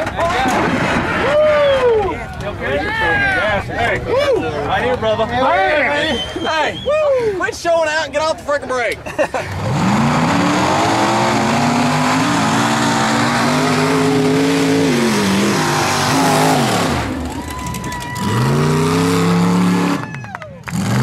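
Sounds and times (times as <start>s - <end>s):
buggy engine revving hard: 9.3s - 17.4s, 18.2s - 21.0s.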